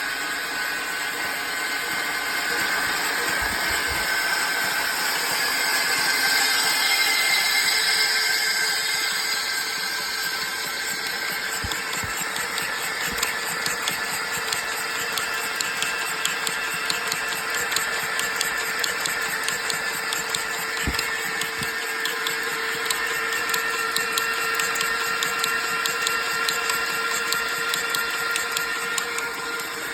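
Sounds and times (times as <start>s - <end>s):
engine knocking and tapping: 1.0s - 29.9s
light tapping knock in engine: 19.6s - 21.7s.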